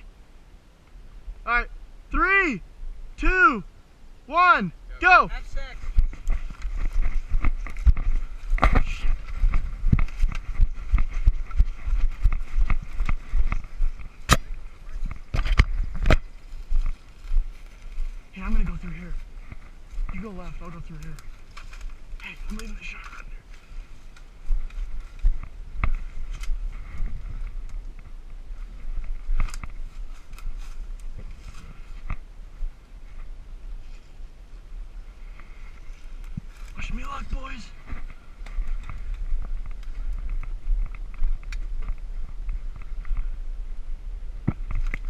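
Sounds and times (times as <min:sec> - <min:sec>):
low microphone rumble: 0:00.0 - 0:45.0
running footsteps: 0:05.7 - 0:32.2
rustling: 0:05.7 - 0:32.3.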